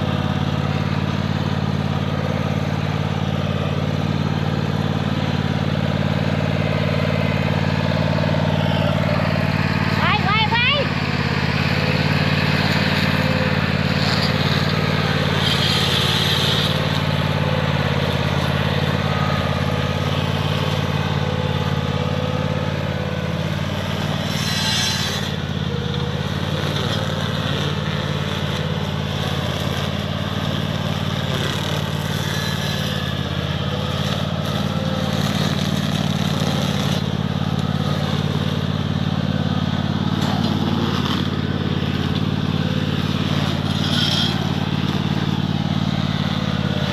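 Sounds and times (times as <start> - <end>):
riding lawnmower engine running: 0.0 - 46.9.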